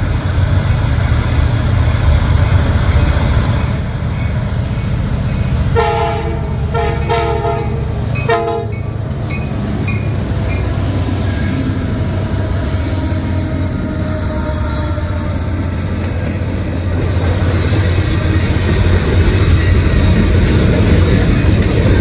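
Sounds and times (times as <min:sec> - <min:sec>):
freight train rumbling past: 0:00.0 - 0:22.0
locomotive air horn blasts: 0:05.7 - 0:09.0, 0:10.8 - 0:16.4.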